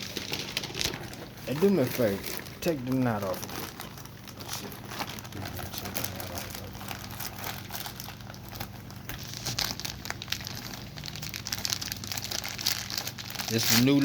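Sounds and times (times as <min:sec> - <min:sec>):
plastic bag crinkling: 0:00.0 - 0:14.0.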